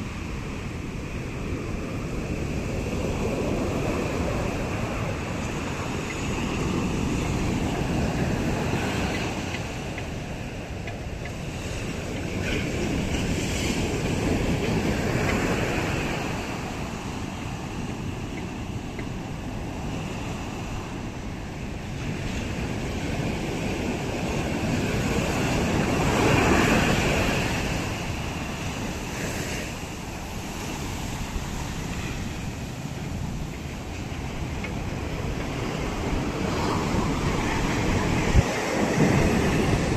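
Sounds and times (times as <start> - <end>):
ocean surf washing in: 0.0 - 39.9
wind rushing: 34.3 - 39.9.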